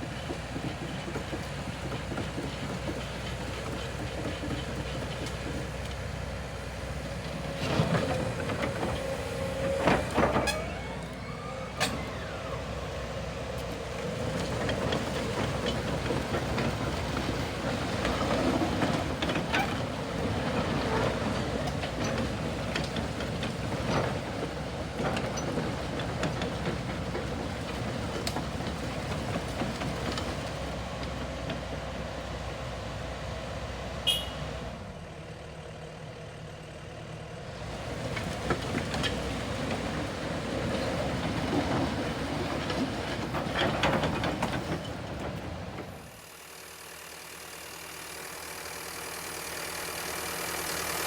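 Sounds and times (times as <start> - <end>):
excavator engine and hydraulics: 0.0 - 51.0
brief squeal: 10.3 - 12.5.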